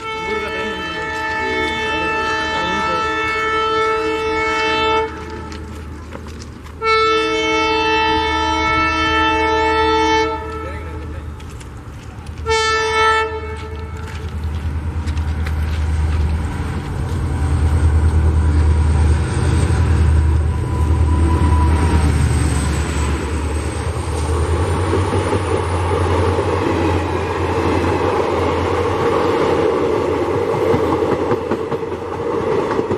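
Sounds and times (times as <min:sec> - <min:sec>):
locomotive horn blasts: 0:00.0 - 0:05.7, 0:06.8 - 0:11.1, 0:12.4 - 0:14.2
locomotive engine rumble: 0:00.0 - 0:32.9.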